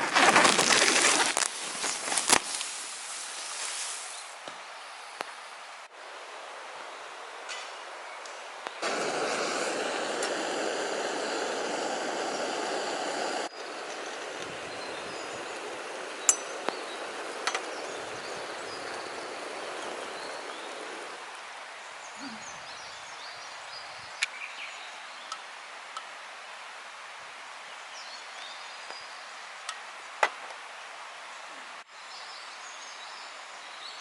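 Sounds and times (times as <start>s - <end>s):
campfire pops: 8.8s - 13.5s.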